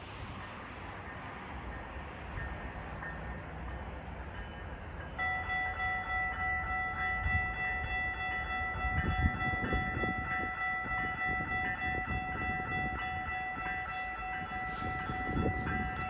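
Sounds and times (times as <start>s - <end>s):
train rumble approaching: 0.0s - 16.0s
train air horn chord: 10.1s - 16.0s.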